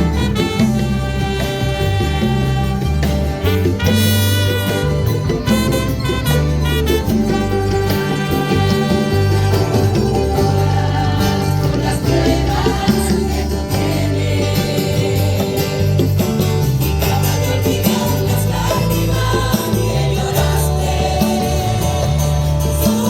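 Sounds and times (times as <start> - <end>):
instrumental accompaniment: 0.0 - 23.0
choir singing: 6.6 - 23.0.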